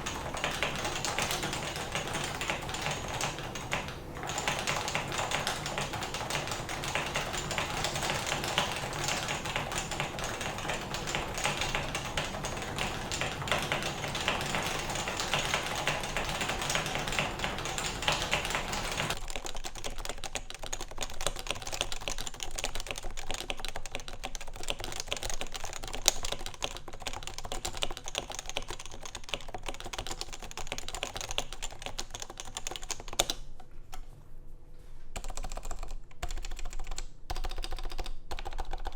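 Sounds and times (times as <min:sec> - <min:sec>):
low background hum: 0:00.0 - 0:24.6
keyboard typing: 0:00.0 - 0:34.0, 0:35.2 - 0:38.9.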